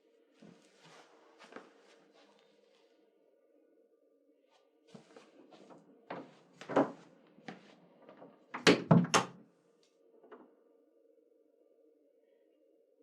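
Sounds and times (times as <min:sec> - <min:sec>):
door knocks and clunks: 0:06.1 - 0:07.0, 0:08.1 - 0:09.4.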